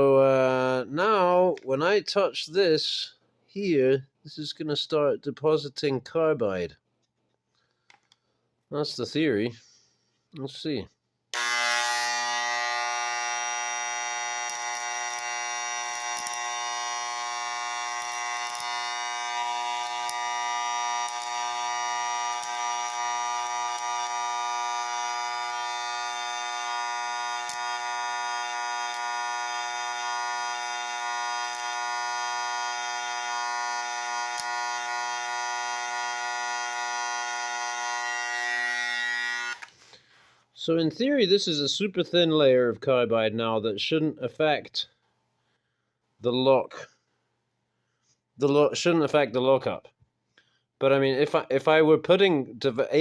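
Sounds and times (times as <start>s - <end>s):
deposition pen buzzing: 11.3s - 39.8s.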